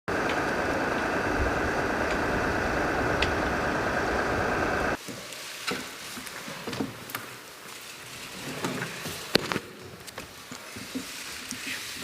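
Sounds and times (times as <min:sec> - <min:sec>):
high steady whine: 0:00.1 - 0:05.0
machine running: 0:00.1 - 0:05.0.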